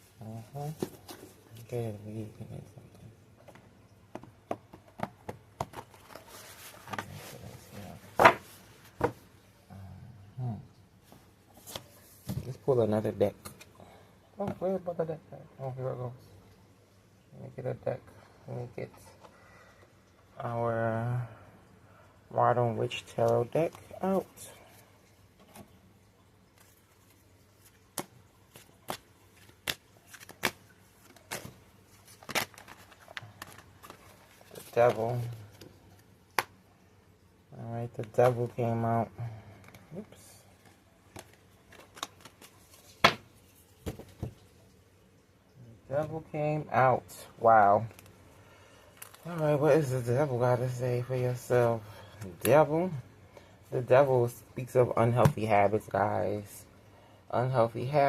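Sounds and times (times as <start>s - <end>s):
cards clicking and snapping: 27.9s - 34.6s, 41.1s - 43.2s.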